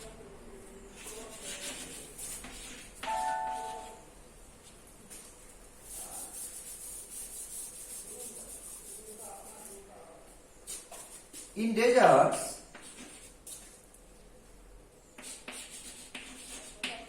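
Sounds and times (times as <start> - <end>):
bell-like ding: 3.0 - 4.0.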